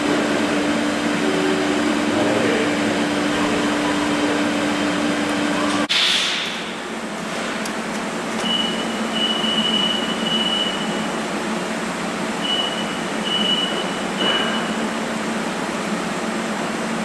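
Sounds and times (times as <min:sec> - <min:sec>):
valve grinder humming: 0:00.0 - 0:05.9.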